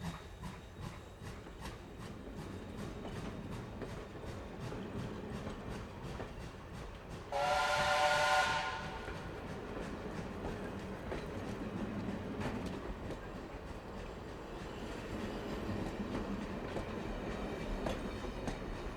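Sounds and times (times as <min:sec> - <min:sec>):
train rumbling: 0:00.0 - 0:18.9
train horn blast: 0:07.3 - 0:09.3.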